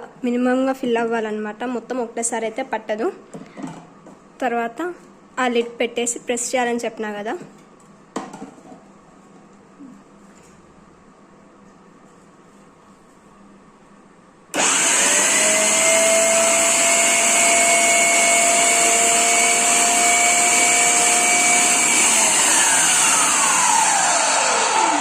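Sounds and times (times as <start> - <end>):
mixer grinder motor whirring: 14.5 - 25.0.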